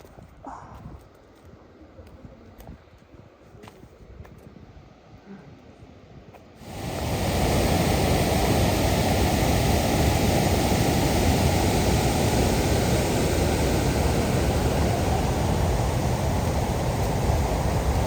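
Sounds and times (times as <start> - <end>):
waterfall rushing: 6.6 - 18.0.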